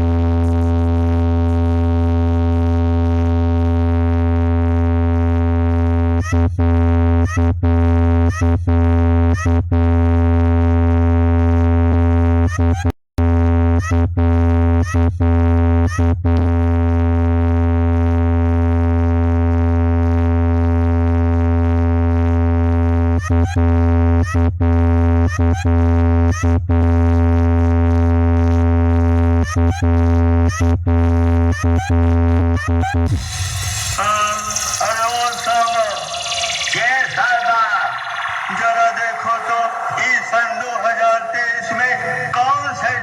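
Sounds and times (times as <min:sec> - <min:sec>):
heavy bass note: 0:33.1 - 0:40.9
quick rising chirps: 0:33.1 - 0:41.1
electronic synthesizer chord: 0:33.1 - 0:41.2.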